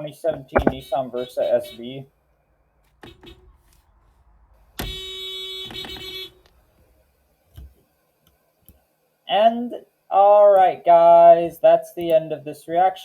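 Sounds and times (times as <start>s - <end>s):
short low thump: 0.4s - 0.8s
car horn: 0.6s - 1.9s, 3.0s - 3.6s, 4.8s - 6.5s.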